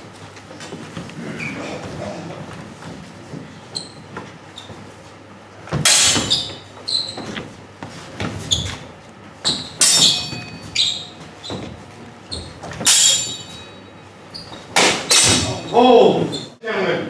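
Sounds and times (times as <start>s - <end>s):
steel swords clashing: 5.9s - 6.6s, 9.5s - 11.2s, 12.8s - 14.0s, 14.8s - 16.5s.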